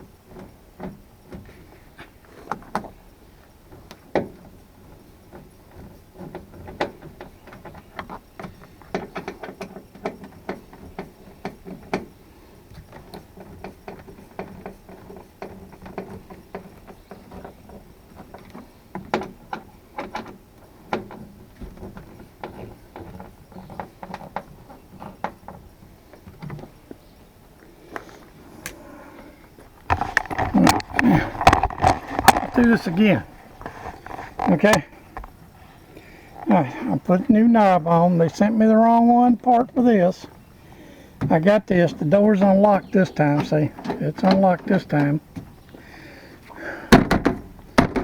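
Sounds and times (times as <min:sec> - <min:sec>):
hand work clicks and knocks on truck door: 0:46.9 - 0:48.0.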